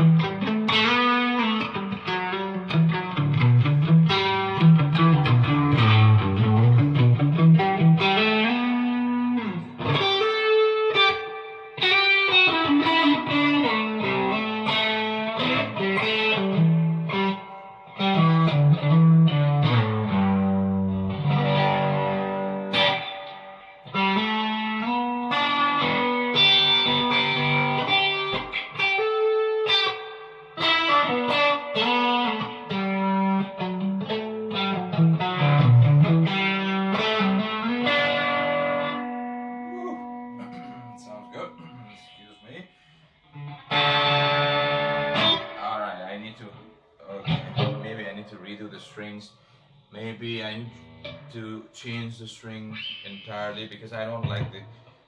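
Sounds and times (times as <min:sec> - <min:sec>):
electric guitar chords and lines: 0:00.0 - 0:53.4, 0:54.1 - 0:55.0.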